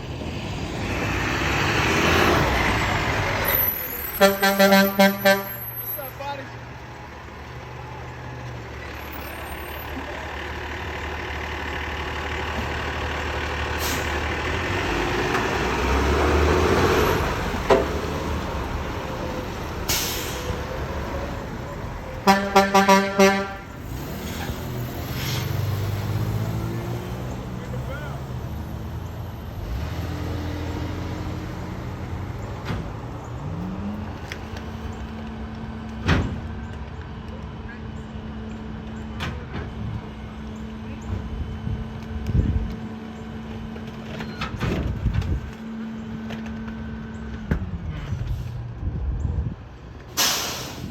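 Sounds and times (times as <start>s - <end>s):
garbage truck engine running: 6.8s - 16.3s.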